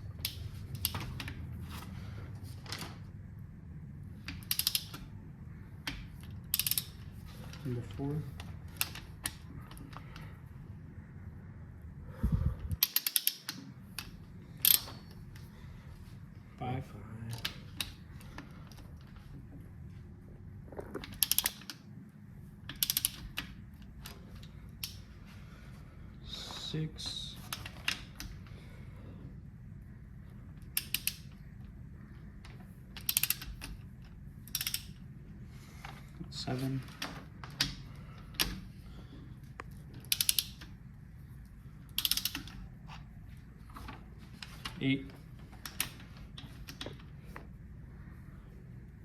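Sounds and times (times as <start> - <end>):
socket ratchet clicking: 4.3 - 5.1, 5.9 - 7.2, 12.7 - 15.1, 21.0 - 21.8, 22.7 - 23.8, 30.6 - 31.4, 33.0 - 33.8, 34.4 - 35.0, 40.0 - 40.8, 41.9 - 42.6.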